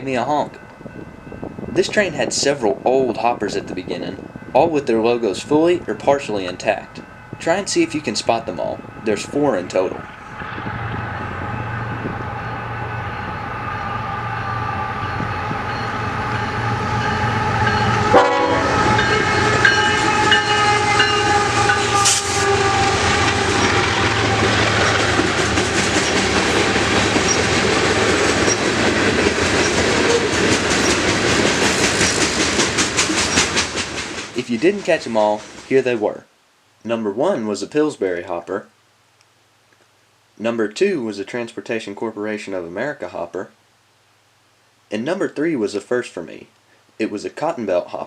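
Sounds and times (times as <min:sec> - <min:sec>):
diesel locomotives passing: 0:00.0 - 0:35.7
train air horn chord: 0:11.6 - 0:26.9
wheels clacking over rail joints: 0:17.6 - 0:35.7.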